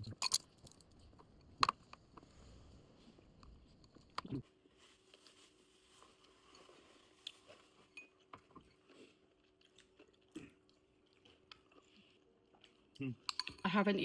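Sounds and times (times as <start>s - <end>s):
person chewing and crunching: 3.5s - 13.6s.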